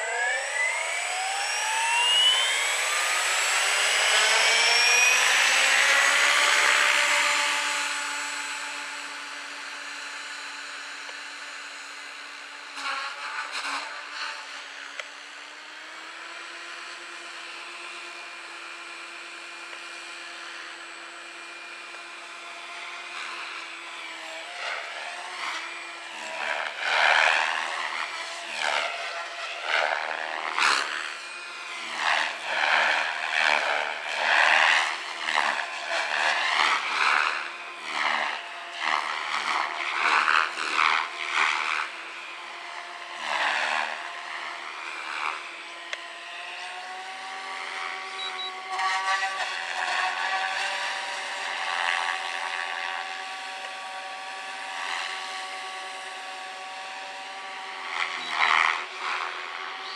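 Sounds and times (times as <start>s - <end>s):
rotor swishing: 0.0s - 10.2s
rc helicopter motor whine: 0.0s - 59.9s.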